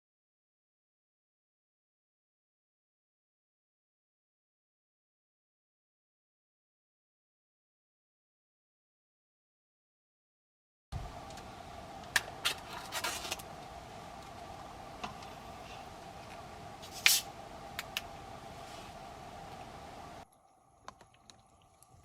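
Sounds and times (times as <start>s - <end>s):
steady hum: 10.9s - 22.0s.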